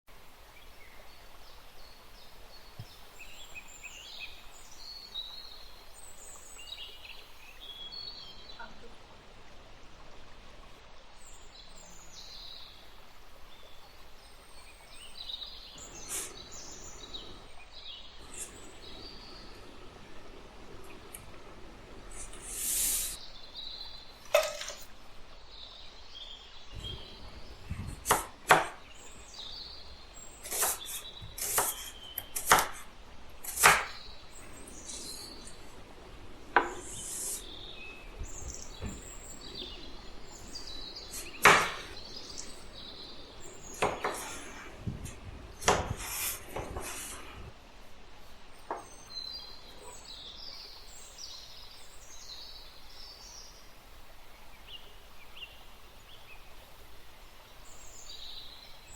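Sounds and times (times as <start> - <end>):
knife chopping on wooden board: 27.8 - 28.8, 30.4 - 34.0, 36.5 - 37.4, 41.1 - 41.9, 43.7 - 44.6, 45.6 - 47.0.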